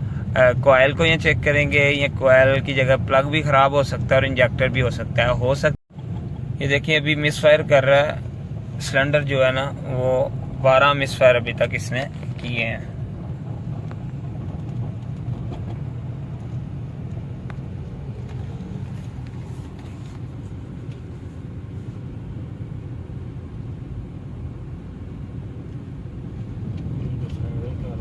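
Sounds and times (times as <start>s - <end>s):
misfiring car engine rumble: 5.9s - 28.0s.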